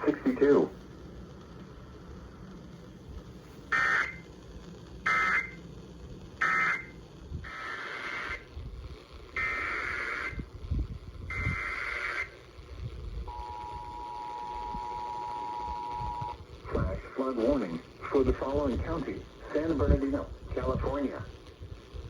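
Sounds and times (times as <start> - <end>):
warbling data tones: 3.7 - 5.7, 6.4 - 8.5, 9.4 - 10.5, 11.3 - 12.4, 13.3 - 18.5
two-tone attention signal: 13.3 - 16.4.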